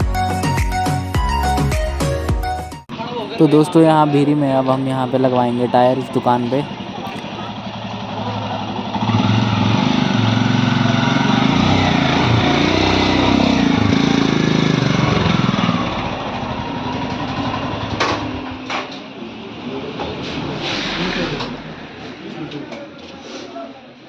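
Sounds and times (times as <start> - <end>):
motorcycle engine running: 6.6 - 22.4.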